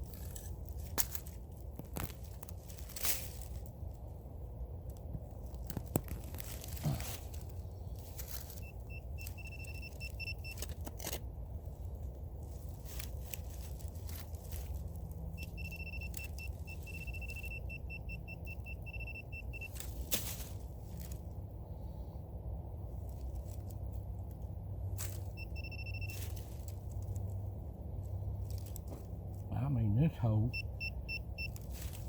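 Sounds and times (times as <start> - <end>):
digging in rocky ground: 0.0 - 32.0
metal detector beeping: 8.4 - 11.2, 15.3 - 19.9, 25.2 - 26.5, 30.5 - 31.7.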